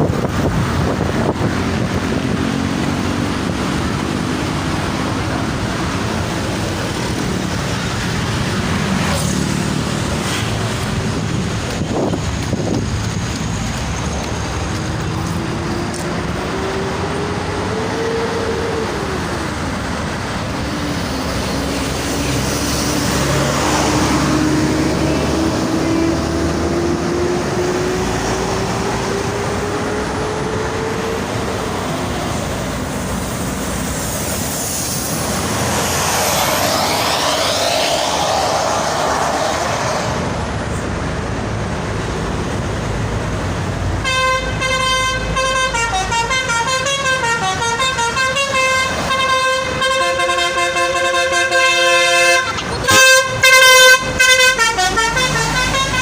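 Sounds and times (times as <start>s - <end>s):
roadside traffic noise: 0.0s - 56.0s
whine climbing in pitch: 34.8s - 40.3s.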